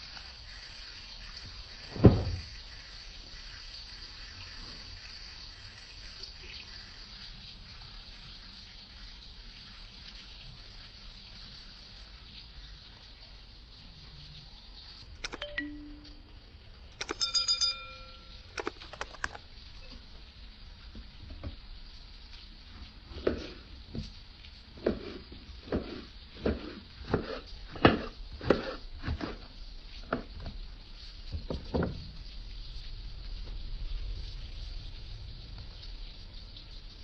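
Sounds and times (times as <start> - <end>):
ringing metal clink: 17.0 - 18.7.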